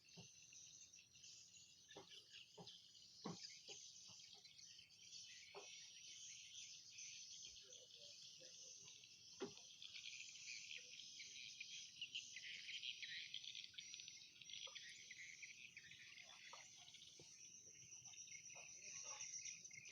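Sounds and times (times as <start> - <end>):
insect chorus buzzing: 0.0 - 19.9.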